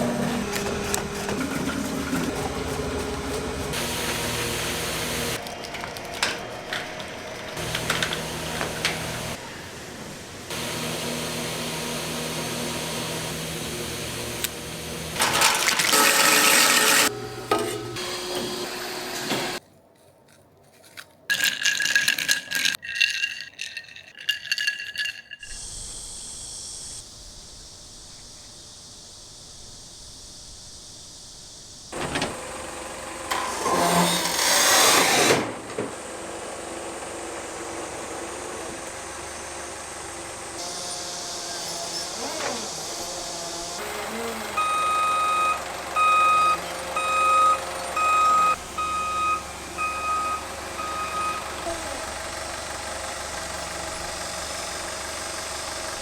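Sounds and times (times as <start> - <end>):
machine running: 0.0 - 19.6, 28.7 - 56.0
rattling: 20.9 - 25.5.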